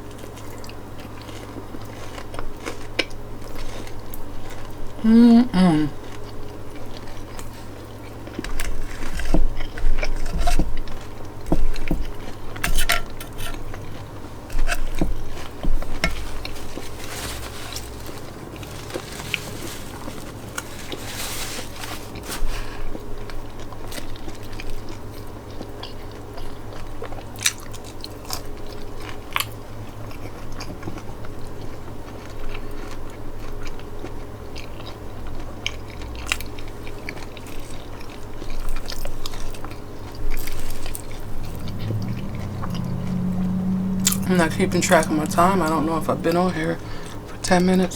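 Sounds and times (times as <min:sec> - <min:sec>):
person chewing food: 0:00.0 - 0:43.2.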